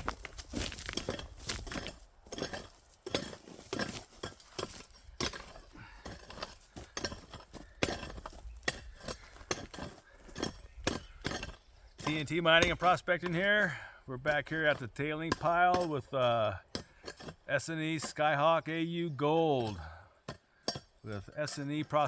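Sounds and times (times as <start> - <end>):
footsteps on loose rock: 0.0 - 17.5.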